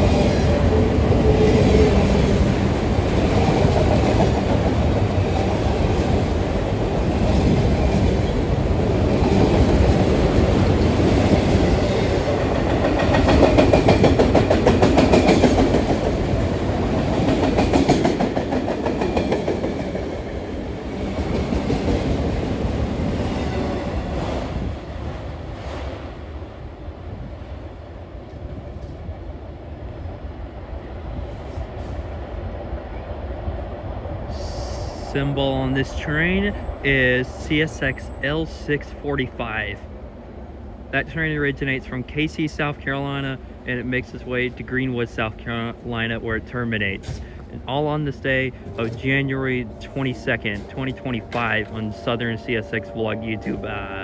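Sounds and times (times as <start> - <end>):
freight train cars rolling past: 0.0 - 54.0
wheels clacking over rail joints: 0.1 - 20.3.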